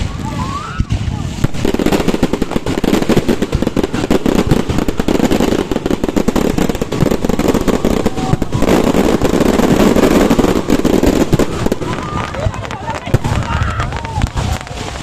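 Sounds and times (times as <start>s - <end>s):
firecrackers popping: 0.0s - 15.0s.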